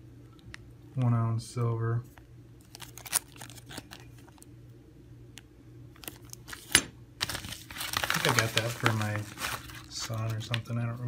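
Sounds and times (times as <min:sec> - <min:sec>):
packaging clicks and rustles: 0:02.6 - 0:04.5, 0:06.0 - 0:11.0
packaging crinkling: 0:02.6 - 0:04.5, 0:05.9 - 0:11.0.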